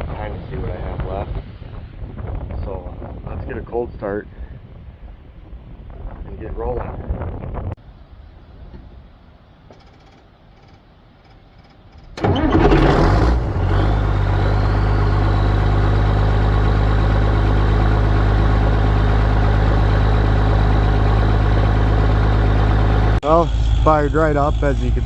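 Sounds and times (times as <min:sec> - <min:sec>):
diesel engine starting and idling: 0:12.0 - 0:25.0.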